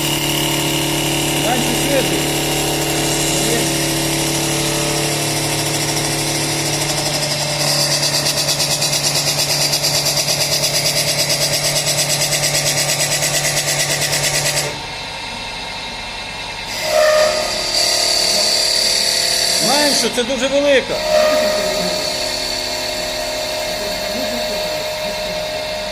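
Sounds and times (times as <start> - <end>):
pulsing cutting noise: 0.0 - 14.9, 15.7 - 25.9
lathe machine hum: 0.0 - 25.9.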